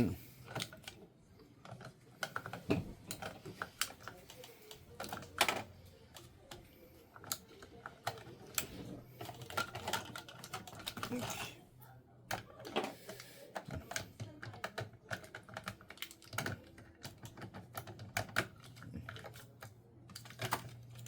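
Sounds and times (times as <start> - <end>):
plastic clicks and knocks on printer: 1.6 - 11.2, 12.3 - 21.0.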